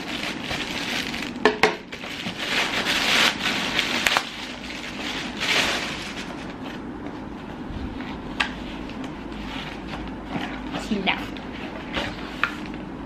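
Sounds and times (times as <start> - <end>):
packaging crinkling and rustling: 0.0 - 6.9
packaging being torn open: 2.1 - 4.4.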